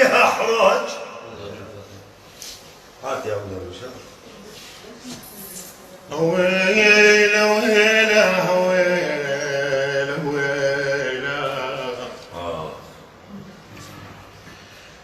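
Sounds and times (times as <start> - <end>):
man singing folk vocal line: 6.1 - 12.9.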